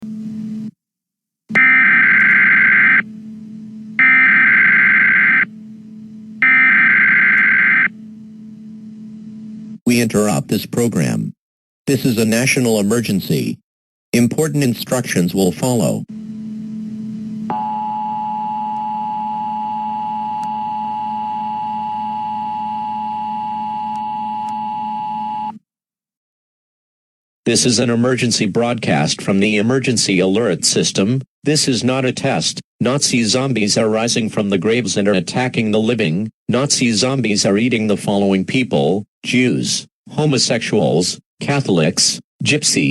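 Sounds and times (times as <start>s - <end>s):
steady low hum: 2.0s - 11.3s, 14.2s - 24.2s.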